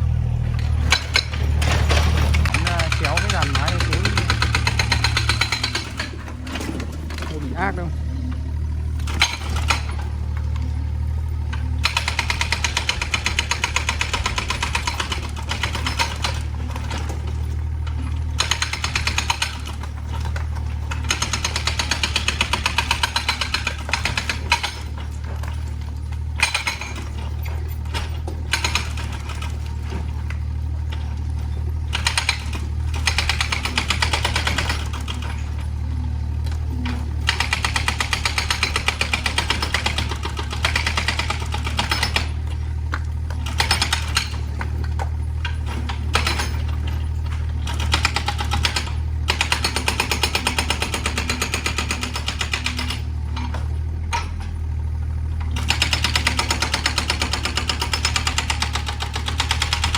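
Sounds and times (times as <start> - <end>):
excavator engine hum: 0.0 - 59.9
rapid hammering: 0.9 - 7.9.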